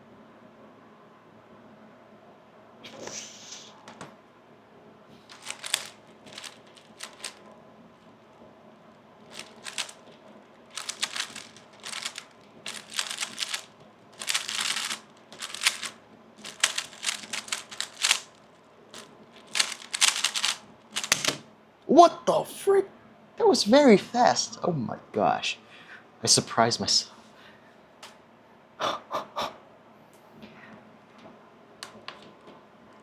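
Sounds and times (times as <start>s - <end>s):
puzzle cube plastic clicks: 5.3s - 7.4s, 9.3s - 21.4s.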